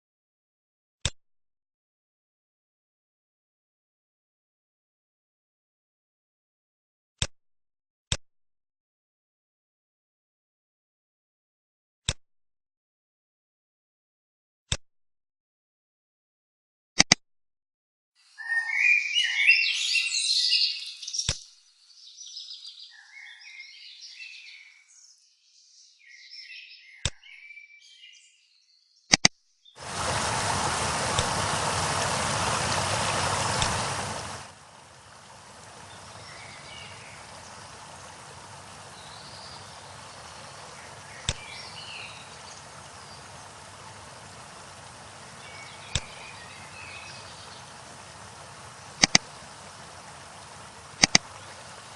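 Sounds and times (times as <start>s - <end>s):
birds chirping: 18.3s - 29.1s, 29.7s - 51.9s
sharp single clicks: 29.1s - 29.3s, 41.2s - 41.4s, 45.9s - 46.2s, 49.0s - 49.3s, 51.0s - 51.3s
rushing water: 29.8s - 51.9s.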